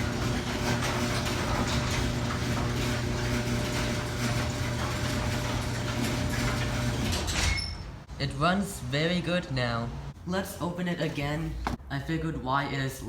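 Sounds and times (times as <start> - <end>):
garage door opener motor hum: 0.0 - 8.1.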